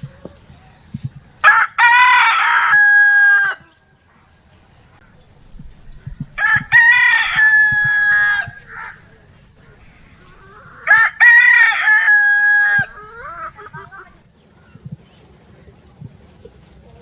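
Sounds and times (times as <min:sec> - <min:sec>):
rooster crowing: 0:01.4 - 0:03.8, 0:05.9 - 0:14.2.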